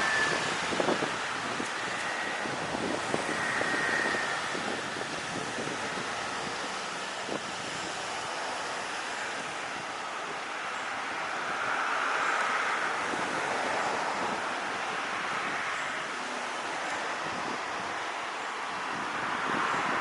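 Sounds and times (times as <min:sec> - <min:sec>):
wind buffeting microphone: 0:00.0 - 0:10.4, 0:11.0 - 0:20.0
distant jet engine noise: 0:00.0 - 0:20.0.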